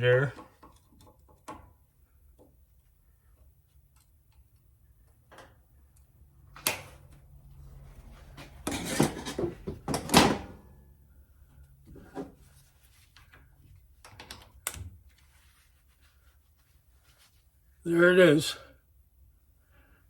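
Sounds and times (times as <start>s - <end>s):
metal scraping clatter: 8.6s - 9.6s.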